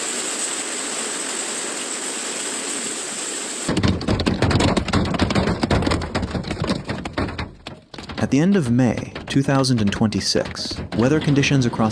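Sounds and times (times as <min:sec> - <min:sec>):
heavy rain hissing: 0:00.0 - 0:03.7
clatter of quick knocks: 0:03.7 - 0:11.9.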